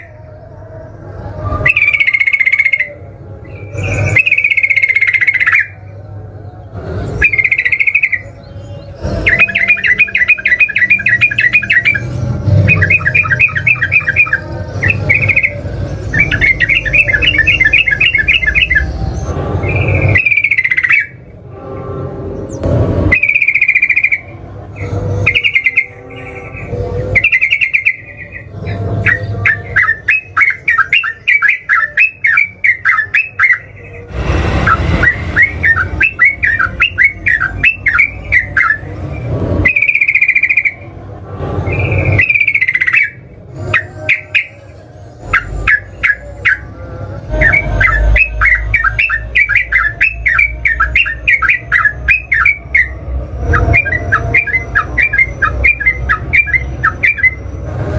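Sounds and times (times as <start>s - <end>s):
bird chattering song: 1.6s - 5.9s, 6.9s - 21.2s, 22.4s - 34.0s, 34.7s - 40.8s, 41.7s - 46.7s, 47.3s - 57.5s
bird whistled notes: 3.6s - 5.8s, 7.2s - 21.2s, 22.6s - 24.3s, 25.2s - 26.0s, 27.1s - 33.9s, 34.6s - 38.9s, 39.6s - 40.8s, 41.7s - 44.6s, 45.3s - 46.6s, 47.3s - 57.5s.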